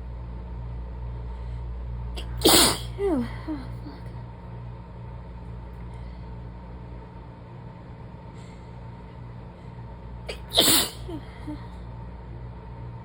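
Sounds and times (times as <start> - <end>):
steady low hum: 0.0 - 13.0
sharp sneeze: 2.2 - 3.3, 10.3 - 11.6.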